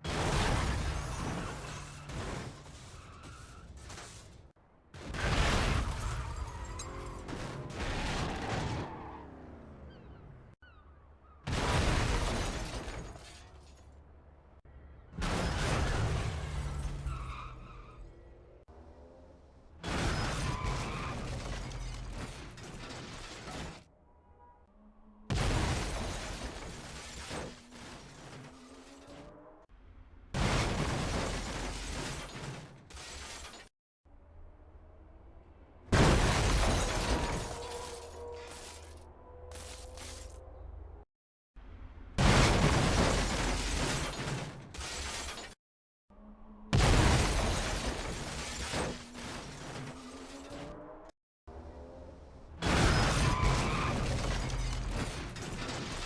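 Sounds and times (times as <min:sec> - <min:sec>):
car crash impacts: 0:00.0 - 0:09.0, 0:11.5 - 0:13.8, 0:19.8 - 0:23.9, 0:25.3 - 0:29.3, 0:30.3 - 0:33.7, 0:35.9 - 0:40.3, 0:46.7 - 0:50.8, 0:52.6 - 0:56.0.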